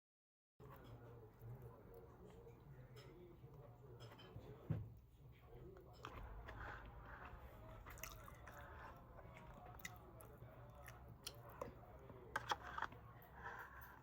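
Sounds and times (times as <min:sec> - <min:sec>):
person chewing food: 0:05.8 - 0:14.0.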